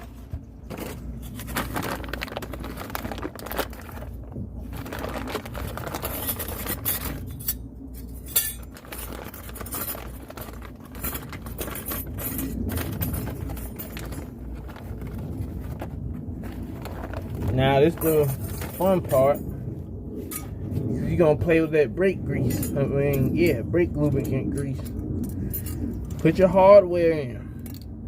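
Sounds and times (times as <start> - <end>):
steady low hum: 0.0 - 28.0
metal parts and tools clinking: 5.6 - 15.2, 17.8 - 19.5, 22.4 - 23.3, 27.6 - 27.9.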